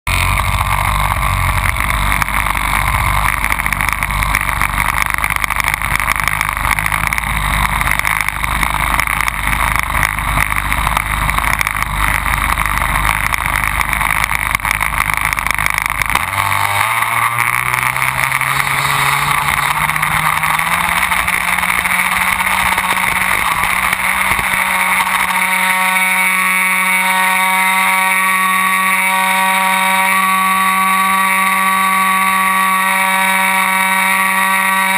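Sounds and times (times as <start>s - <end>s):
model airplane motor whine: 0.1s - 34.9s
wind rumble: 17.6s - 26.6s.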